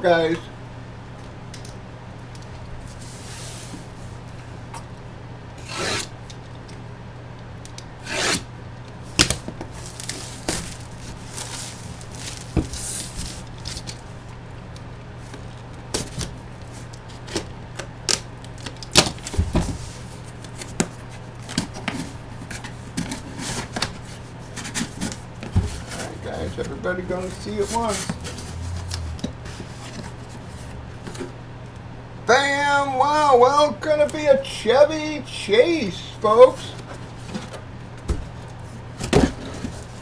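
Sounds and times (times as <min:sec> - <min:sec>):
low electrical hum: 0:00.0 - 0:40.0
cardboard rubbing swishes: 0:09.3 - 0:14.2.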